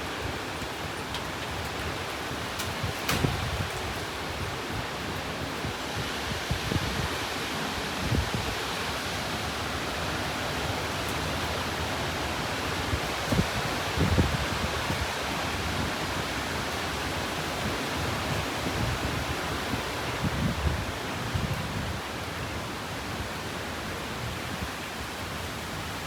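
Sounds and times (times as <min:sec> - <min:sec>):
wind buffeting microphone: 0:00.2 - 0:08.8, 0:12.8 - 0:22.2.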